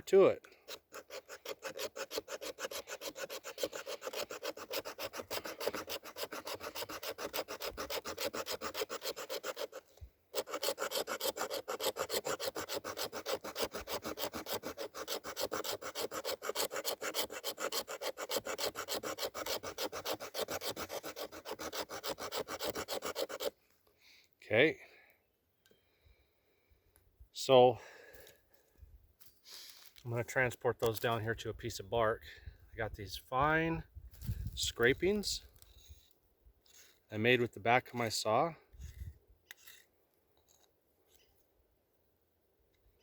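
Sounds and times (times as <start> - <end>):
saw blade scraping wood: 0.1 - 23.6, 38.8 - 39.9.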